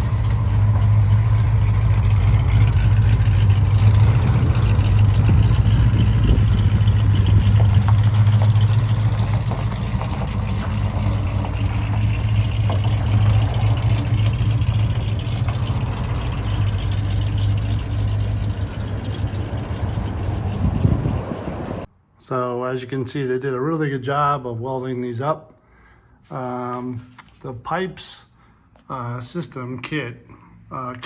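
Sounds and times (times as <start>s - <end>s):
car engine exhaust drone: 0.0s - 21.9s.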